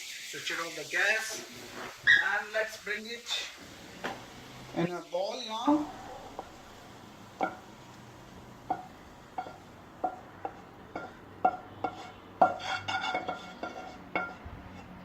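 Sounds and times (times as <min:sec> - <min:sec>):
metal spoon scraping cooking pan: 0:08.7 - 0:15.0.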